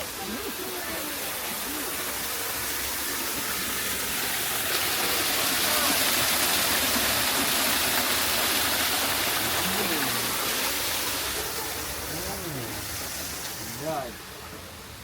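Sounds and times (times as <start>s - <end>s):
running water rushing: 0.0s - 15.0s
faint voices: 9.2s - 14.4s.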